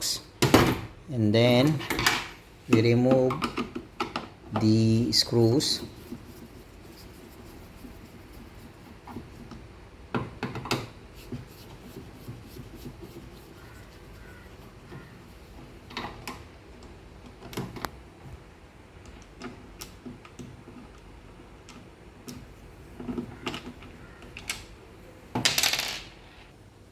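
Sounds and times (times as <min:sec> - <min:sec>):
hand tools and plastic parts clicking: 0:01.6 - 0:06.2, 0:19.0 - 0:24.8.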